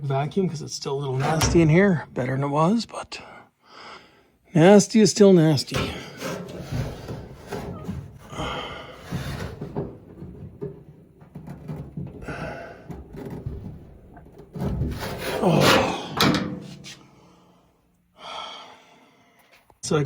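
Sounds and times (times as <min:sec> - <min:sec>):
hands clicking and knocking in cabinet: 0:01.2 - 0:02.0.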